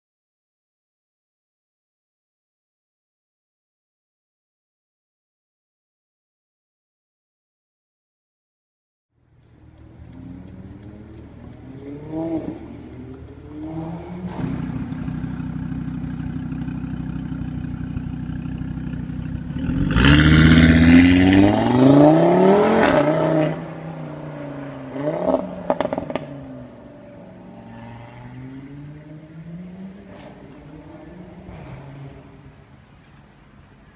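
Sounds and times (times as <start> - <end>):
exhaust crackles: 9.2 - 33.9
car engine revving: 9.4 - 32.9.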